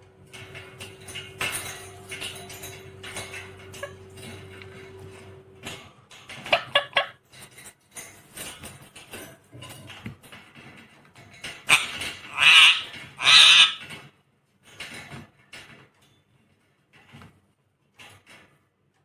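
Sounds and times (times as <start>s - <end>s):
parrot squawking: 11.7s - 13.9s.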